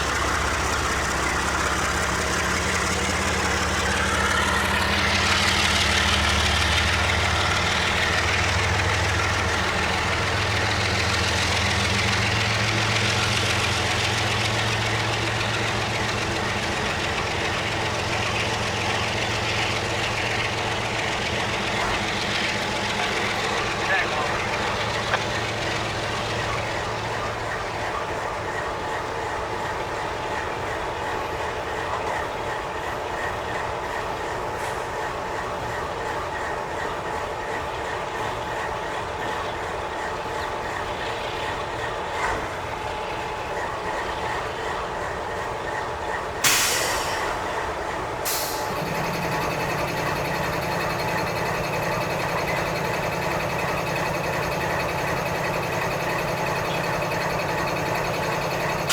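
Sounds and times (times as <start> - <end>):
train wheels rumbling on rail: 0.0 - 58.9
faint whining tones: 48.6 - 58.9.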